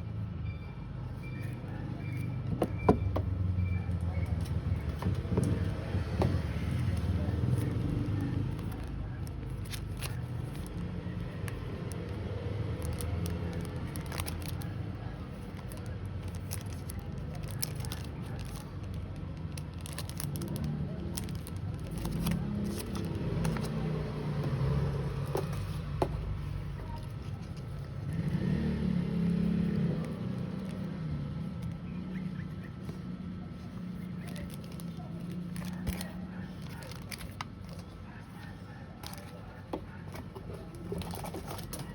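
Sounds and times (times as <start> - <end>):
packaging clicks and crackles: 4.1 - 26.0, 34.1 - 41.9.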